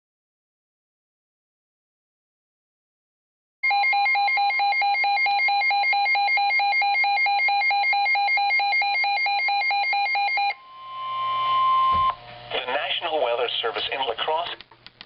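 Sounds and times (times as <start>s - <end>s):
rapidly pulsing alarm tone: 3.6s - 12.2s
steady warning tone: 3.7s - 12.9s
faint radio hiss: 12.4s - 14.8s.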